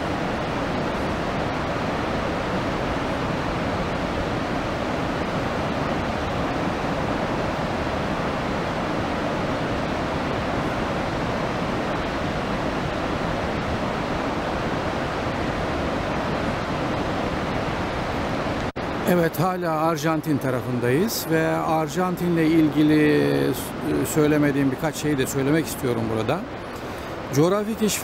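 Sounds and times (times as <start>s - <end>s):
large waterfall pouring: 17.8s - 28.0s.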